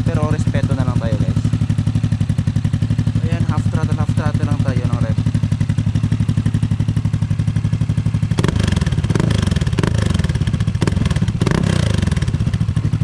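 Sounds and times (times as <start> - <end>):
scooter engine idling and revving: 0.0 - 13.0.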